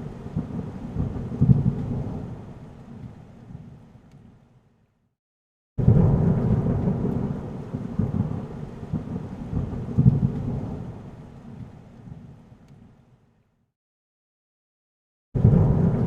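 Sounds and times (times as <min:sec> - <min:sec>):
deep rolling thunder: 0:00.0 - 0:02.5, 0:05.8 - 0:11.0, 0:15.4 - 0:16.0
rain: 0:00.0 - 0:04.9, 0:05.8 - 0:13.6, 0:15.4 - 0:16.0.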